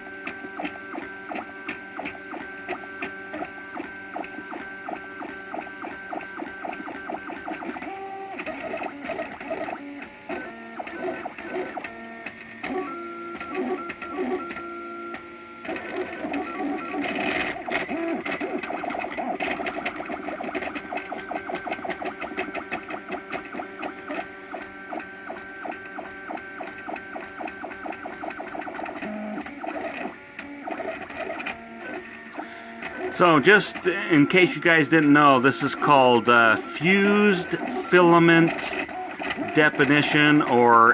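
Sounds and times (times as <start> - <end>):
stepper motors singing: 32.9 - 40.9.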